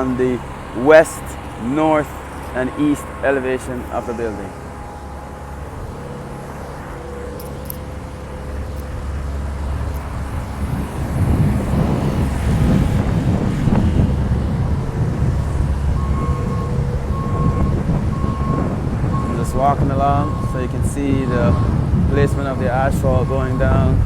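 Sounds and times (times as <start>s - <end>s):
backup alarm beeping: 0.0s - 9.4s, 15.6s - 21.8s
paving machinery engines running: 0.0s - 24.0s.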